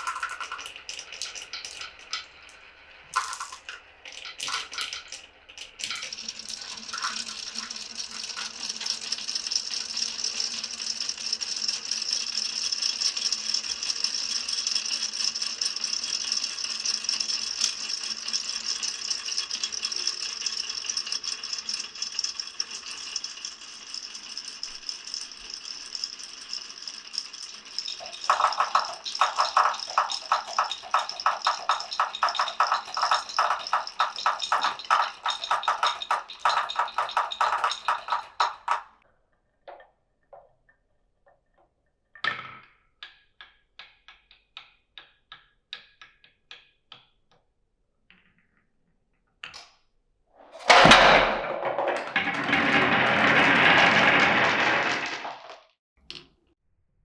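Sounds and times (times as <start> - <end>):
glass marbles rolling and clicking: 0.0 - 39.0, 50.7 - 56.2
rapid clacking of marbles: 0.0 - 39.0, 51.5 - 56.3.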